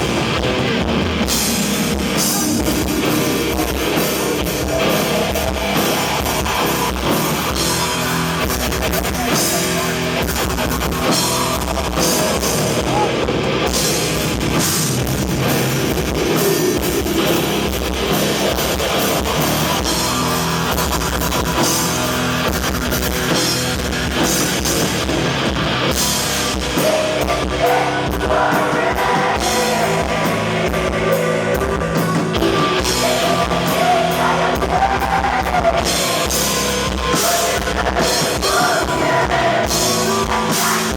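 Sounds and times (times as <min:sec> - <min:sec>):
metal band playing live: 0:00.0 - 0:40.9.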